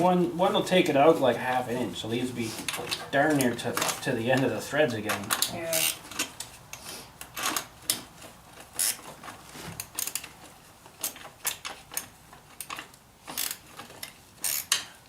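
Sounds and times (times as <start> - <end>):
metallic clicks of hand tools: 11.0 - 15.0.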